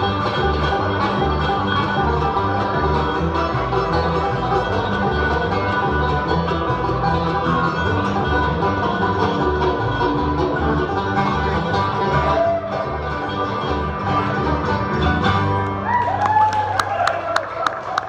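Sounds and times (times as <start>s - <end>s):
plucked strings: 0.0s - 16.2s.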